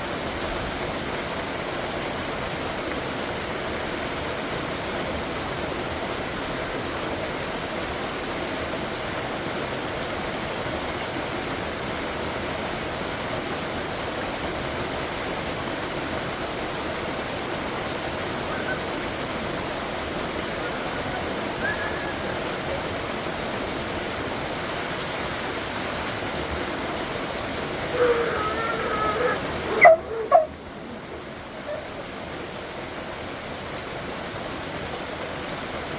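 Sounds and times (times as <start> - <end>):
waterfall rushing: 0.0 - 35.9.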